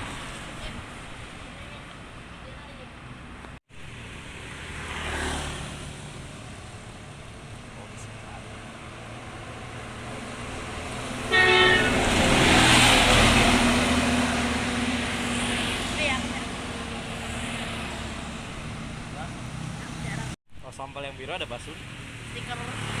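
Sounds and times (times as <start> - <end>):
bus rushing past: 3.0 - 20.4
bus horn blast: 11.2 - 12.2.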